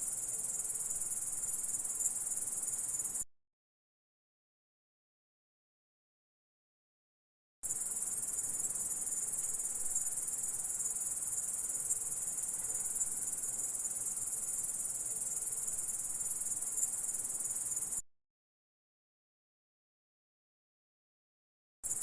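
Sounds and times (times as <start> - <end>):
high-pitched insect trill: 0.0 - 3.2, 7.7 - 18.0.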